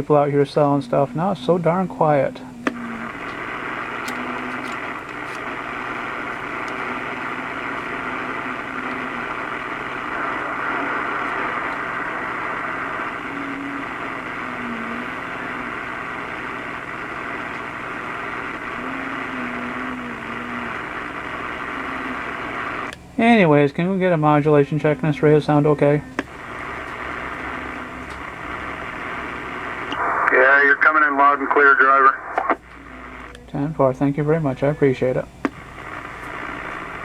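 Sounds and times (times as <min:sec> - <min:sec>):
radio static hiss: 0:00.0 - 0:37.0.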